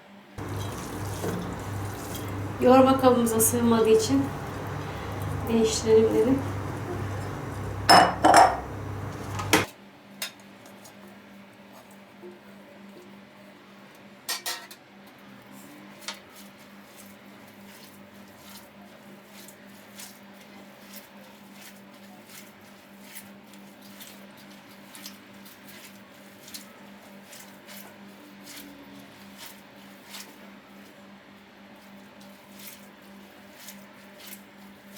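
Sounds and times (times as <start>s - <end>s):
hands kneading wet meat: 0.4s - 7.9s
bowl clattering: 0.4s - 9.7s.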